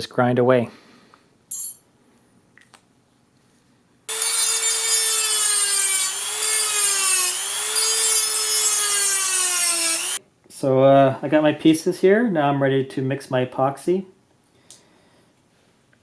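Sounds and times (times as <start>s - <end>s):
power grinder grinding steel: 4.1s - 10.2s.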